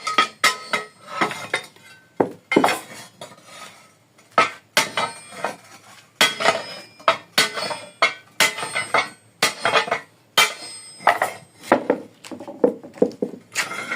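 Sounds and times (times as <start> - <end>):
metal strikes with ringing rattle: 0.0 - 2.9, 4.4 - 5.6, 6.2 - 12.0, 13.5 - 13.9.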